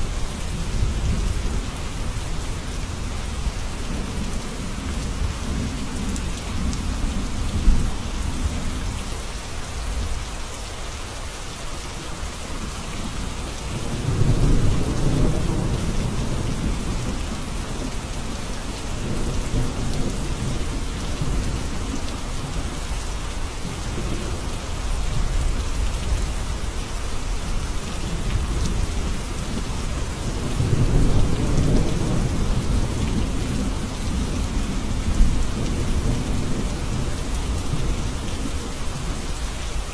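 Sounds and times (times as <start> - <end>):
rain falling: 0.0 - 39.9
thunder rumbling: 13.7 - 22.8, 27.5 - 38.8.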